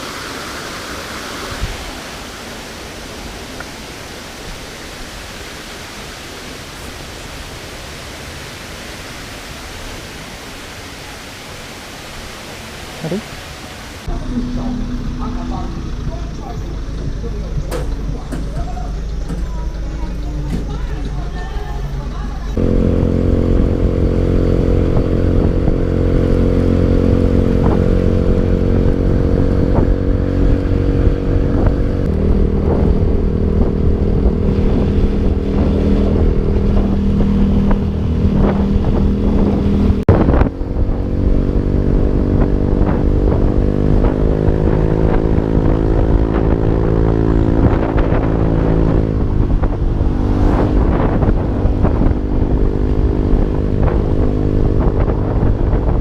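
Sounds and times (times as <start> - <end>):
motorcycle engine running: 14.0 - 21.5, 22.5 - 56.0.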